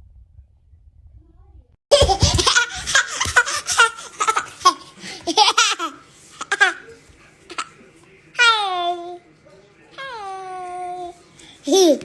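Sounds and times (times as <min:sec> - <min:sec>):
person laughing hard: 0:01.9 - 0:05.9.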